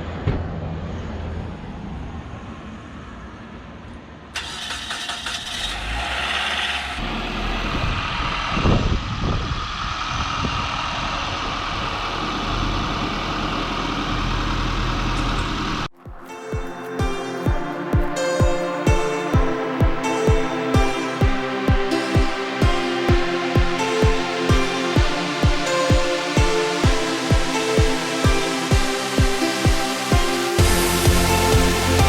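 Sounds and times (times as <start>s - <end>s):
car engine running: 4.4s - 15.9s, 30.1s - 32.0s.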